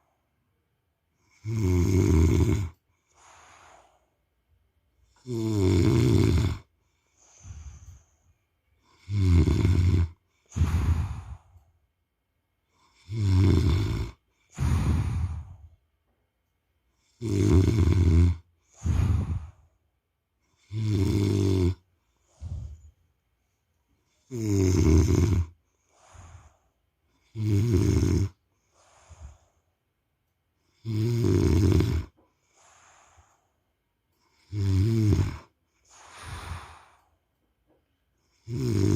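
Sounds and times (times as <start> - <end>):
man snoring: 1.2 - 3.3, 5.1 - 6.7, 8.8 - 11.4, 12.8 - 15.6, 17.0 - 19.6, 20.6 - 21.8, 24.1 - 26.5, 27.2 - 29.4, 30.7 - 32.2, 34.3 - 37.0, 38.3 - 38.9.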